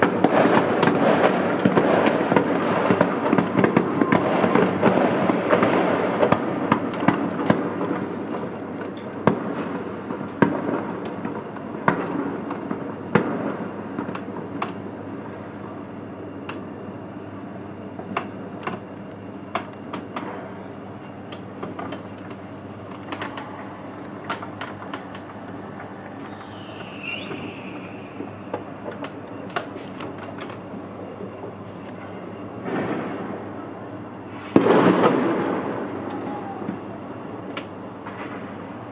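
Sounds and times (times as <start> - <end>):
firework whistle: 0.0 - 6.3, 23.1 - 29.8, 34.3 - 37.5
fireworks pops and cracks: 0.0 - 14.9, 18.0 - 20.4, 21.3 - 33.5, 34.3 - 38.6
fireworks rumble of bangs: 0.0 - 15.9, 21.3 - 31.8, 32.4 - 38.9.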